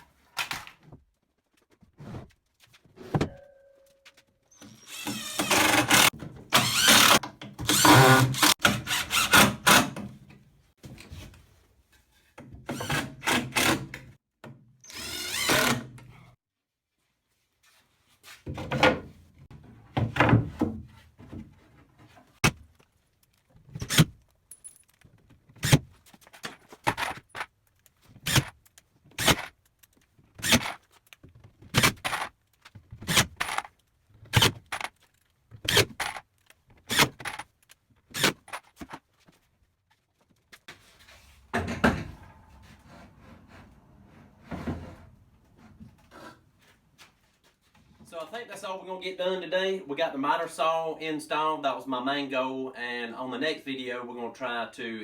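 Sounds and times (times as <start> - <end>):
power drill driving screws: 4.6 - 9.9, 14.8 - 15.9.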